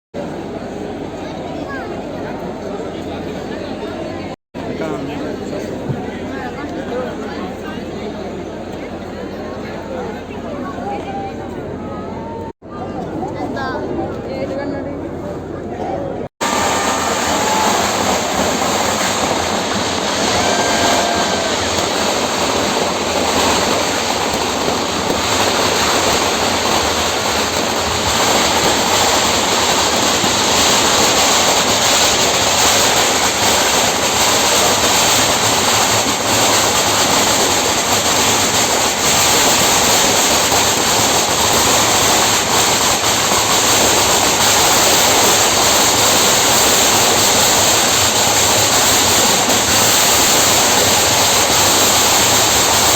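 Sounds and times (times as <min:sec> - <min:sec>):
firework fountain hissing: 0:16.4 - 0:52.9.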